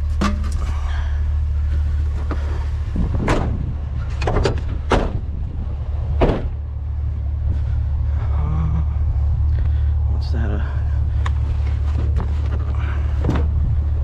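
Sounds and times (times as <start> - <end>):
junk items clunking and knocking: 0.0 - 6.8, 11.2 - 14.0
steady low rumble: 0.0 - 14.0.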